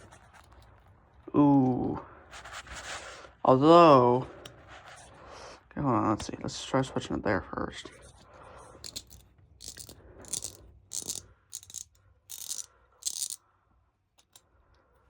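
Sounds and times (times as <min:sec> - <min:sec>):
ratchet wrench clicking: 0:08.8 - 0:13.4.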